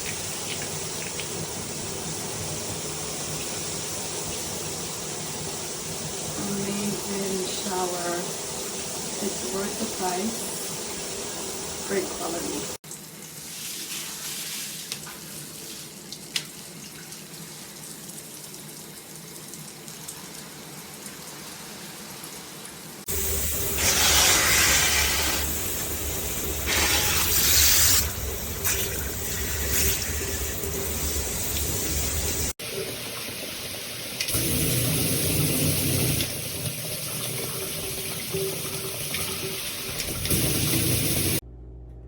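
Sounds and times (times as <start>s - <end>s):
shower head spraying water: 23.1s - 32.6s, 37.7s - 41.4s.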